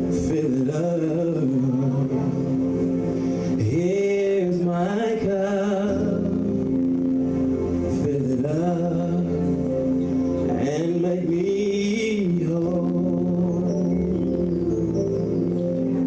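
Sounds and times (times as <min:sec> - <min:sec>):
man singing: 0:00.0 - 0:07.2, 0:07.9 - 0:14.9
held keyboard chords: 0:00.0 - 0:16.0.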